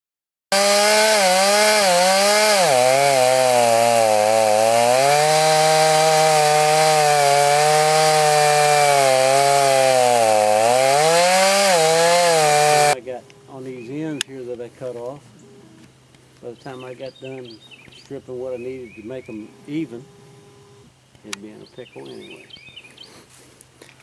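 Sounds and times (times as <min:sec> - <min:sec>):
chainsaw cutting through log: 0:00.5 - 0:13.0.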